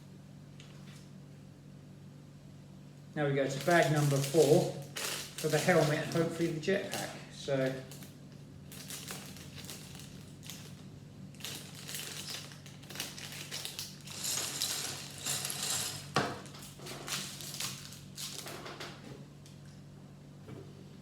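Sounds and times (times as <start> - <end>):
plastic bag crinkling: 3.4 - 18.6.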